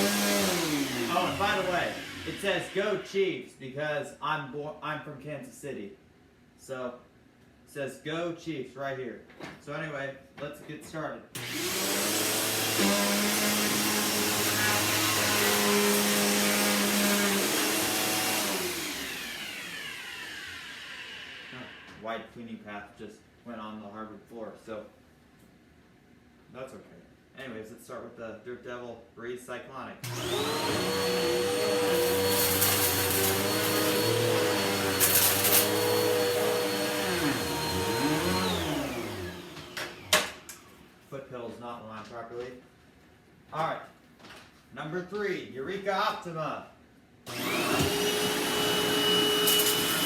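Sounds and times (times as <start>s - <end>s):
vacuum cleaner running: 0.0s - 3.1s, 11.4s - 22.0s, 30.0s - 40.8s, 47.3s - 50.0s
vacuum cleaner winding down: 0.0s - 3.1s, 11.4s - 22.0s, 30.0s - 40.6s, 47.3s - 50.0s.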